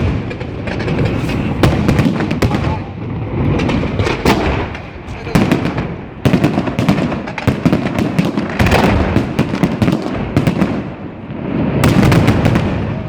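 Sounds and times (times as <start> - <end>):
continuous rumble: 0.0 - 7.6
fireworks bangs and crackling: 0.0 - 13.0.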